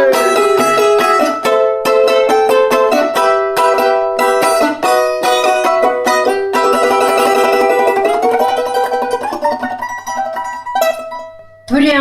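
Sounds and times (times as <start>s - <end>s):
balalaika strummed rapidly: 0.0s - 11.8s.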